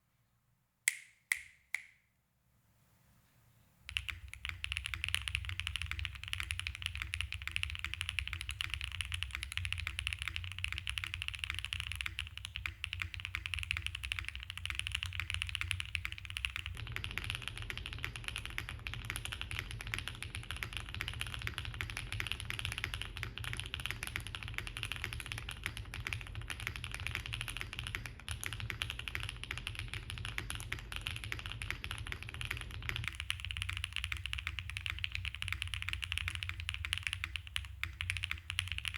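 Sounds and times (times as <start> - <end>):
finger snaps: 0.9 - 2.1, 3.9 - 16.8, 33.1 - 38.9
fast typing on mechanical keyboard: 3.9 - 38.9.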